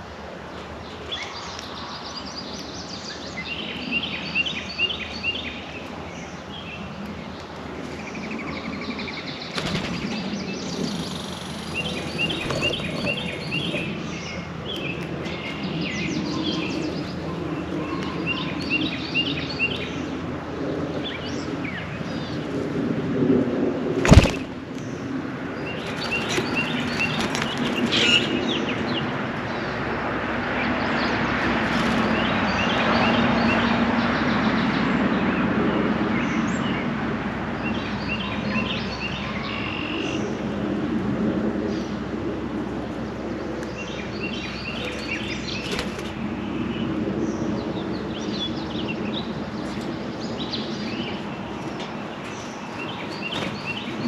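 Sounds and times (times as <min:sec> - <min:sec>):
songbirds chirping: 0:00.0 - 0:22.6, 0:24.0 - 0:37.0, 0:42.8 - 0:54.0
steady rushing background noise: 0:05.6 - 0:34.2, 0:40.4 - 0:54.0.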